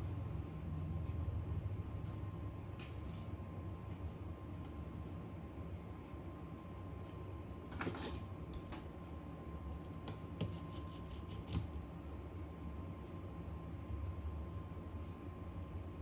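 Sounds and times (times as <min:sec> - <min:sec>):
small tools clicking and tapping: 0:10.0 - 0:11.8.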